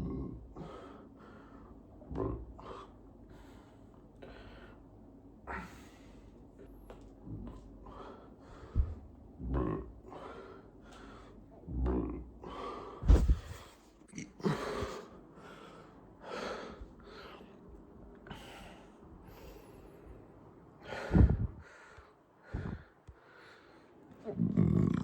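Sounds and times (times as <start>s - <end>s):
person breathing hard: 0.6s - 1.8s, 7.5s - 9.1s, 10.1s - 11.5s, 12.4s - 13.8s, 14.4s - 24.2s.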